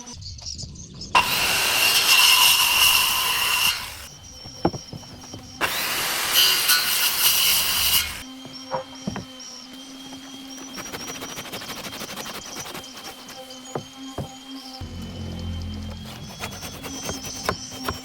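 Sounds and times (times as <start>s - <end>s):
power tool cutting wood: 1.2s - 9.4s, 12.6s - 18.0s
knock: 4.5s - 5.4s, 8.7s - 9.3s.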